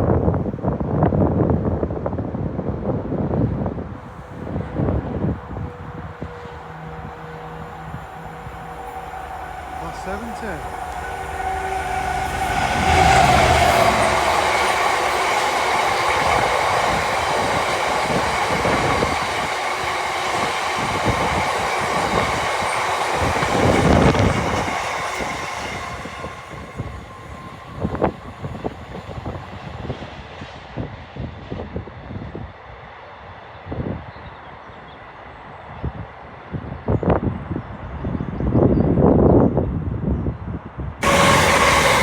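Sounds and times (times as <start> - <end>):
diesel locomotive passing: 0.0 - 42.0
train wagons clattering on rails: 4.8 - 29.3, 41.0 - 42.0.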